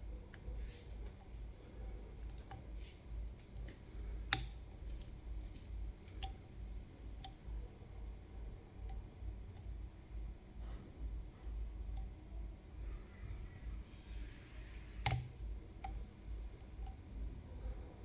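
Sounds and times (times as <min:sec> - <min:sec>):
lock pick clicking in lock: 0:04.3 - 0:06.4, 0:15.0 - 0:16.0.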